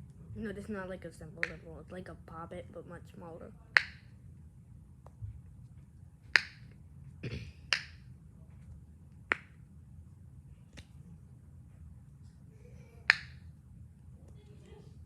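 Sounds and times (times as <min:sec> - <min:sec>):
fidget toy bubbles popping: 0:03.7 - 0:04.1.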